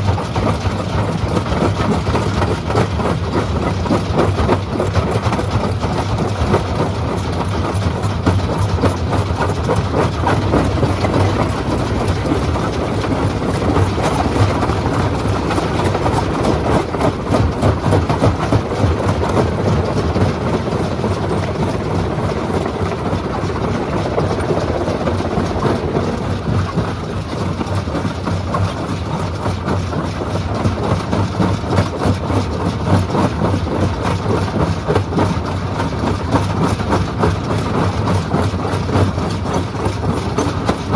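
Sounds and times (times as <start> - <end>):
stone crushing machine running: 0.1 - 29.8.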